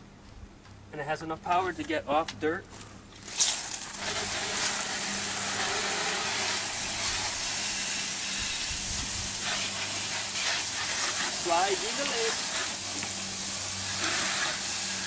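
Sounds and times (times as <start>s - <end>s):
water jets spraying: 3.2s - 15.0s.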